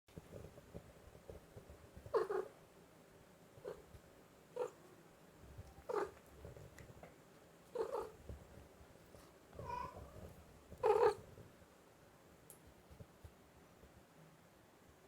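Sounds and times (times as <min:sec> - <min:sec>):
cat calling: 0:09.6 - 0:11.2.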